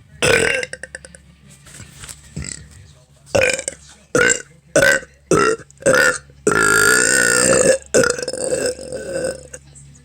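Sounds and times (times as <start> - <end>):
person burping: 0.2 - 1.1, 3.4 - 9.6.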